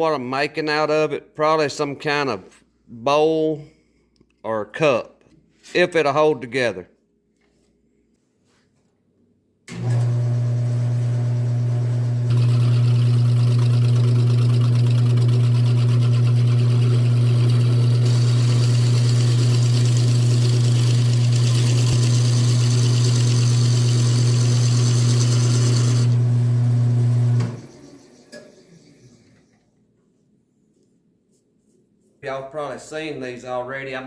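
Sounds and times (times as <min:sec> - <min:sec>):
lathe motor hum: 0:09.7 - 0:29.0
tool cutting spinning wood: 0:12.3 - 0:29.0.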